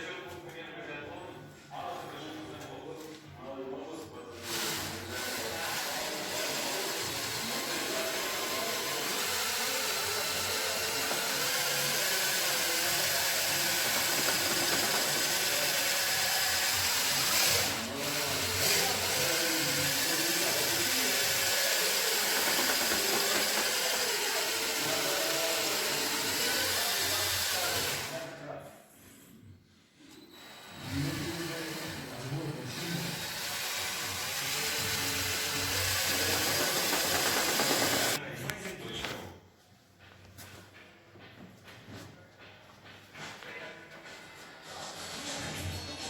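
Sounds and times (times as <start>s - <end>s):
handheld power tool running: 4.4s - 28.2s, 30.4s - 38.2s.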